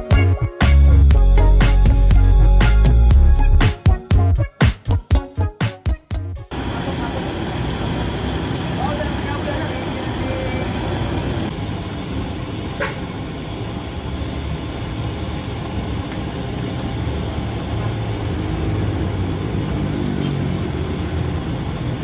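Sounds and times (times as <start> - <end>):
engine running with low rumble: 6.5 - 22.0.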